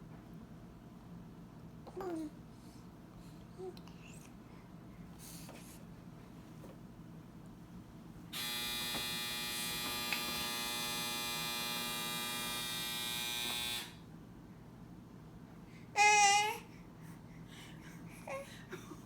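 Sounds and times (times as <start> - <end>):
small electric motor buzzing: 8.4 - 14.0.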